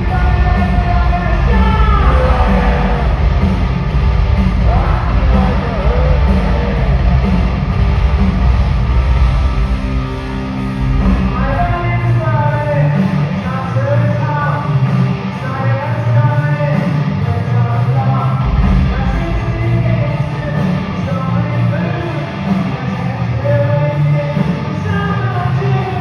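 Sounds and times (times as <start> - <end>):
person singing: 0.0 - 3.5, 4.6 - 7.3
hard rock band playing: 0.0 - 26.0.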